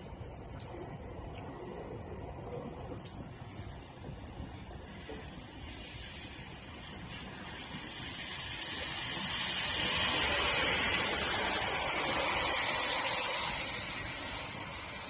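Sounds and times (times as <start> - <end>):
strong wind and rain: 0.0 - 15.0.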